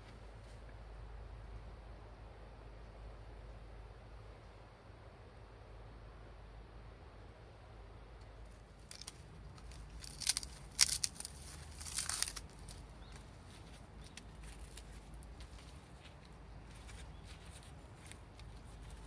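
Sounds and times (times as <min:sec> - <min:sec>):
faint rustling: 0:08.4 - 0:19.0
sharp scraping and crinkling: 0:08.4 - 0:19.0.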